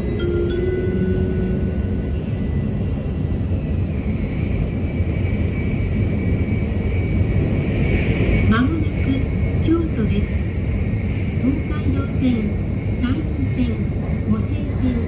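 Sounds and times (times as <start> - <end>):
faint high whine: 0.0 - 8.1
train rumble and hiss: 0.0 - 15.0.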